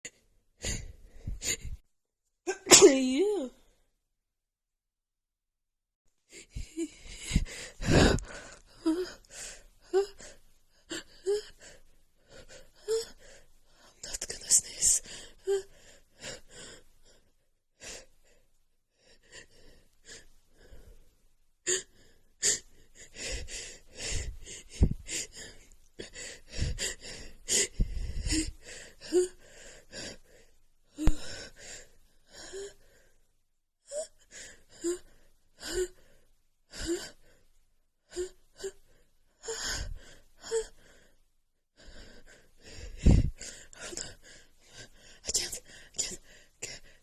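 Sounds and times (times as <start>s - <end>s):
woman gasping and wheezing: 0.1s - 1.8s, 6.3s - 13.9s, 14.8s - 18.2s, 19.0s - 33.2s, 33.8s - 37.5s, 38.1s - 41.2s, 41.8s - 47.0s
woman's stifled sneezes: 2.5s - 3.2s.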